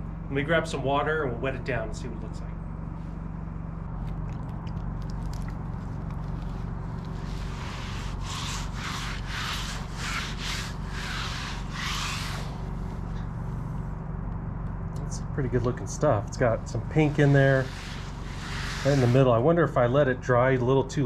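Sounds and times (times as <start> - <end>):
low hum: 0.0 - 21.0
rubbing wet wood: 4.1 - 13.3, 16.3 - 19.4.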